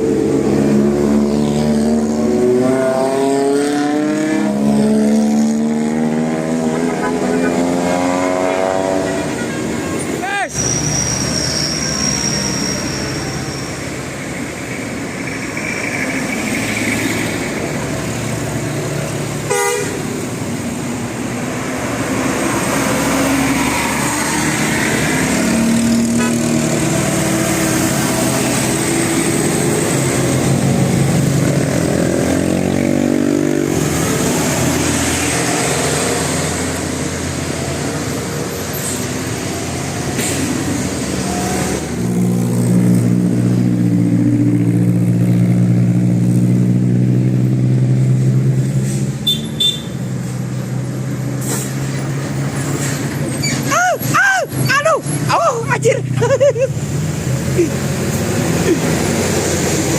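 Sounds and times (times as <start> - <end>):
road traffic with buses: 0.0 - 59.9
multi-tone bus horn: 6.7 - 10.0, 19.4 - 20.2, 26.1 - 26.7, 49.2 - 50.1.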